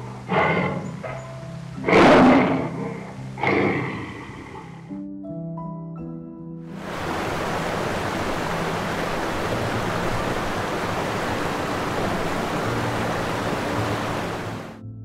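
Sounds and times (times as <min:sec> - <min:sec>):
loud steady hiss: 0:00.0 - 0:05.0, 0:06.7 - 0:14.8
faint low music tones: 0:00.0 - 0:15.0.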